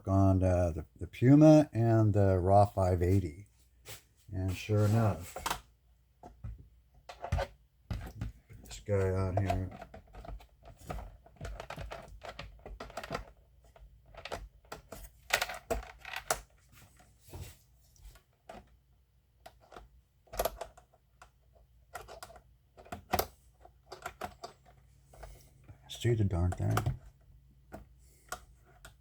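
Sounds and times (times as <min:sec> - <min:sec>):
hands clicking plastic parts: 0:06.2 - 0:16.6, 0:19.4 - 0:29.0.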